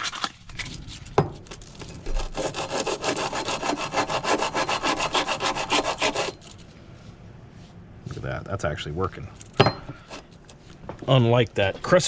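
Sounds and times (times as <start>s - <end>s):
sandpaper rubbing on metal: 2.2s - 6.5s.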